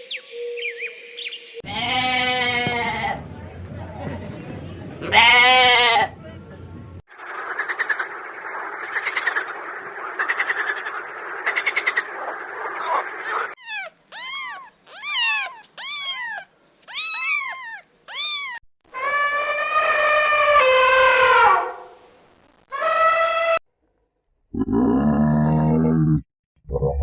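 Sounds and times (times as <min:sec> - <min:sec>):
frog chorus trilling: 0:07.1 - 0:18.5
long steady animal call: 0:10.1 - 0:21.8
animal arched calls: 0:10.2 - 0:21.9.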